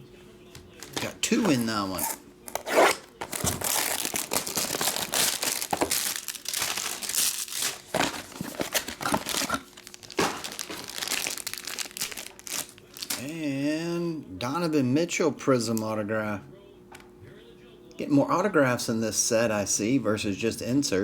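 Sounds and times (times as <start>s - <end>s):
plastic wrappers tearing and crackling: 0.8s - 13.3s.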